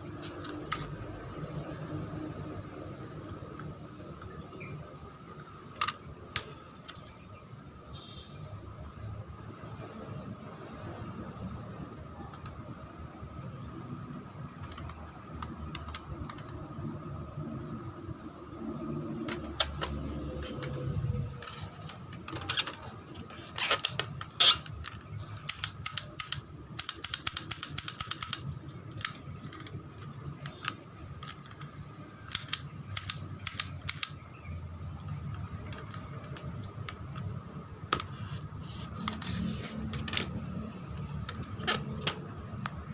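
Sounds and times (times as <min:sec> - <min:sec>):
steady background hum: 0:00.0 - 0:42.9
plastic clicks of airsoft pistol: 0:23.6 - 0:34.2.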